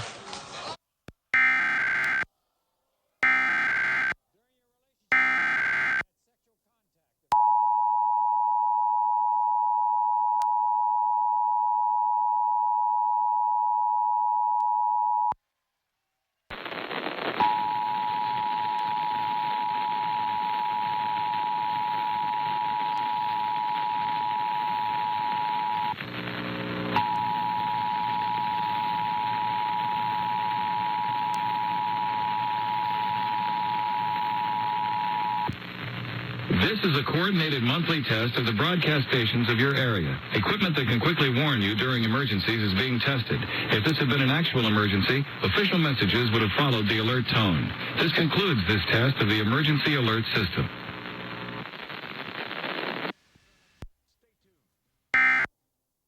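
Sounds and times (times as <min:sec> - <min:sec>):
faint steady hiss: 0:16.5 - 0:54.6.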